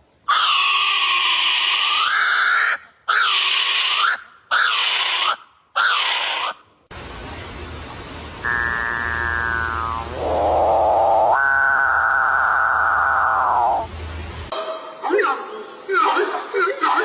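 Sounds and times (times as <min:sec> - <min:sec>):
bird rasping screeches: 0:00.3 - 0:06.6
music-like tones: 0:14.5 - 0:17.0.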